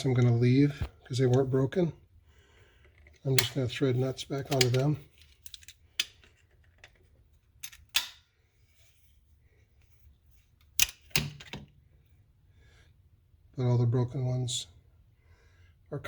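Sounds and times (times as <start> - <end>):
metallic clicks of hand tools: 4.5 - 4.9.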